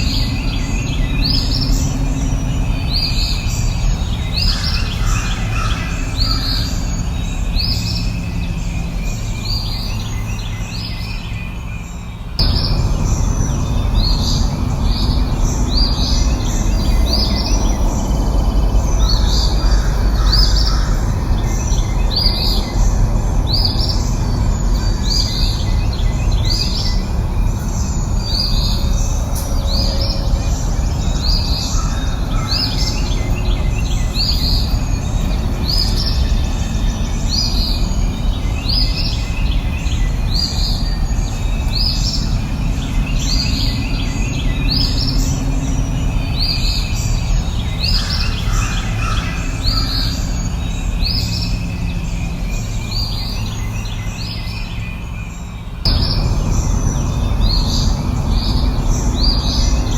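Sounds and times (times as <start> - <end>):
birds chirping: 0.0 - 59.9
low rushing noise: 12.4 - 39.8, 55.8 - 59.9.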